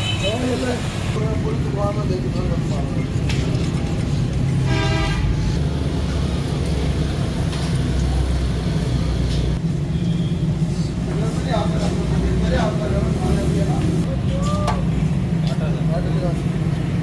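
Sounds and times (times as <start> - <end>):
road traffic rumble: 0.0 - 17.0
car horn toot: 4.7 - 5.3.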